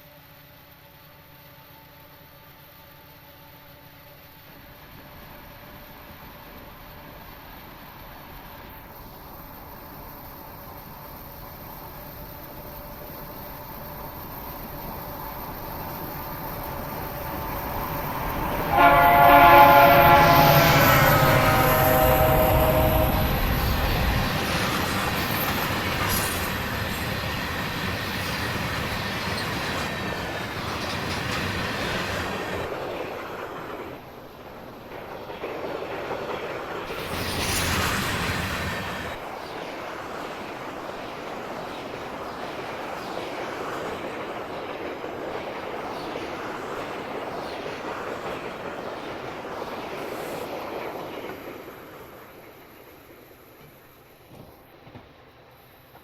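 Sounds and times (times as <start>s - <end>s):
train rolling past on rails: 0.0s - 56.0s.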